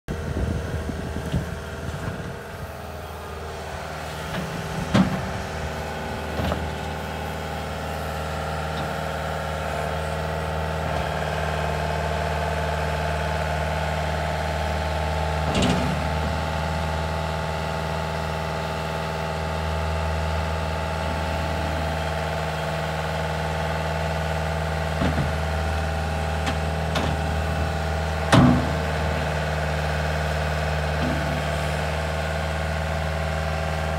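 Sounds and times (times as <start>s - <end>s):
diesel engine running: 0.0s - 33.9s.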